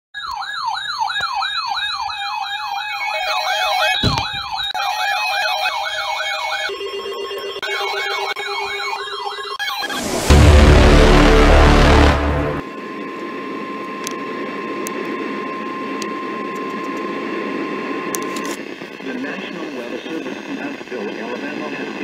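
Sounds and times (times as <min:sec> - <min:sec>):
second siren tone: 0:00.2 - 0:06.8, 0:07.4 - 0:18.6
electronic siren sweeping: 0:00.2 - 0:18.6
pulsing siren tone: 0:00.2 - 0:18.6.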